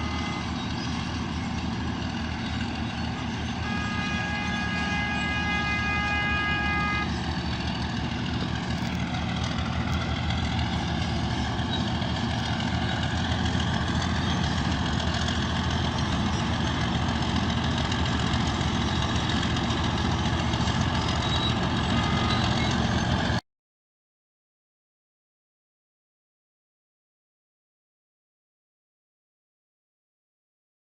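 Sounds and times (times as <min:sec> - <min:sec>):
heavy diesel engine running: 0:00.0 - 0:23.4.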